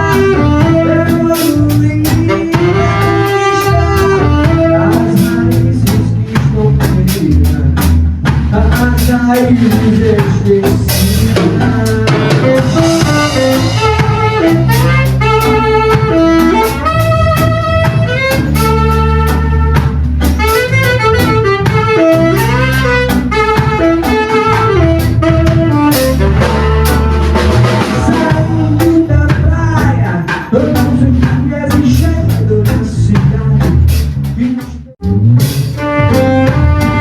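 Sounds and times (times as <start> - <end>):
horn melody: 0.0 - 6.1, 9.0 - 29.3, 34.5 - 37.0
bass: 0.0 - 37.0
drum kit: 0.0 - 37.0.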